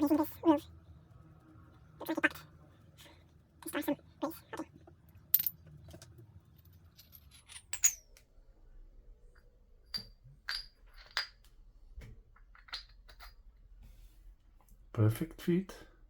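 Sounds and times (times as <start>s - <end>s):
small steel parts clinking: 5.3s - 8.2s, 9.9s - 11.4s.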